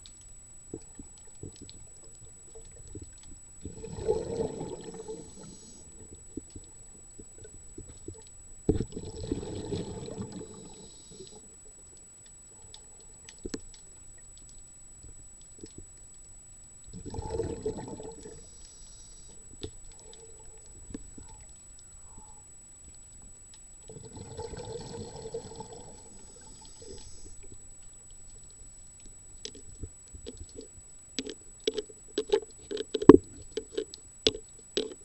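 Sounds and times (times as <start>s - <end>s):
faint clicks: 0.0s - 3.5s, 10.4s - 17.0s, 18.1s - 24.0s
exhaled bubbles gurgling underwater: 0.6s - 11.5s, 16.8s - 22.4s, 23.8s - 28.8s
regulator inhale hiss: 4.9s - 6.2s, 10.3s - 11.7s, 18.2s - 20.6s, 26.0s - 27.7s.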